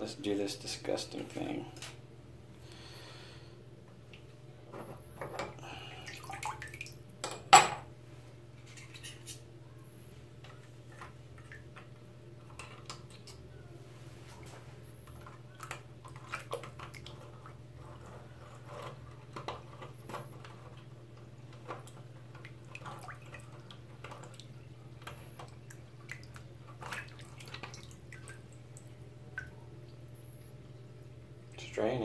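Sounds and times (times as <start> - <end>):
steady low hum: 0.0 - 32.0
water dripping and splashing in sink: 5.7 - 7.2, 8.7 - 9.4, 10.5 - 13.4, 15.0 - 30.1.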